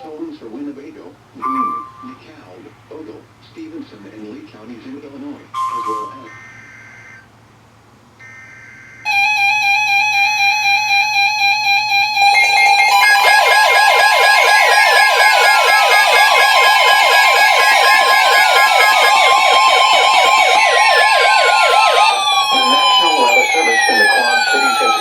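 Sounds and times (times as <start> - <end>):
pulsing beep alarm: 1.4 - 2.2, 5.6 - 7.2, 8.2 - 25.0
warbling siren-like alarm: 1.4 - 2.2, 5.6 - 7.3, 8.2 - 25.0
steady warning alarm tone: 1.4 - 2.4, 5.5 - 7.3, 8.2 - 25.0
slow falling tone sweeps: 9.5 - 25.0.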